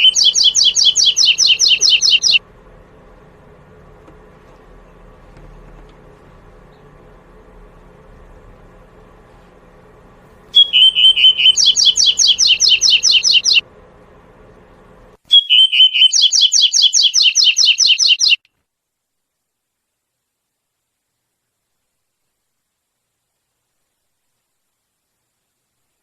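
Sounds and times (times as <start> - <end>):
small bird singing: 0.0 - 2.4, 10.5 - 13.6, 15.3 - 18.5.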